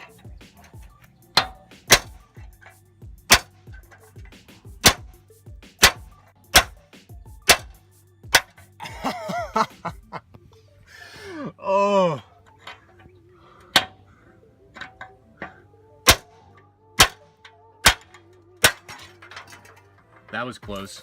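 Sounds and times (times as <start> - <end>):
hammer striking steel bolt: 0.0 - 5.2, 5.8 - 6.8, 7.4 - 8.6, 13.7 - 14.0, 14.7 - 20.3
background music: 0.0 - 21.0
person shouting: 11.3 - 12.3.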